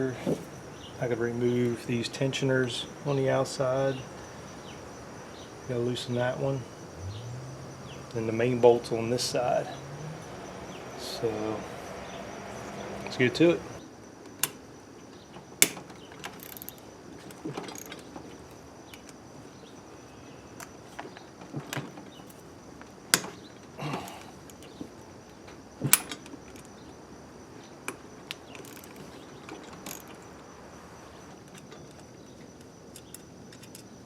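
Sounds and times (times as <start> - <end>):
metal tool clicks and clinks: 15.6 - 18.1, 28.4 - 30.4, 31.4 - 33.9
ratchet clicking: 15.6 - 18.1, 28.4 - 30.4.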